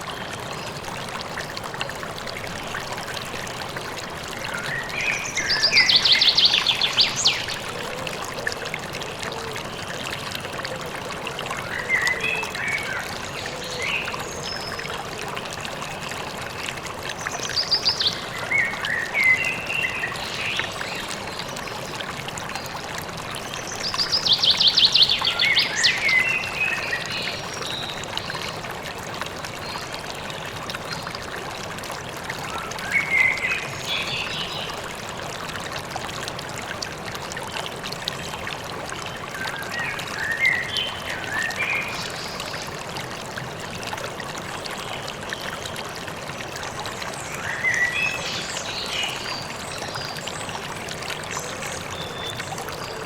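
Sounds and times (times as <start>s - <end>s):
stream running: 0.0s - 53.0s.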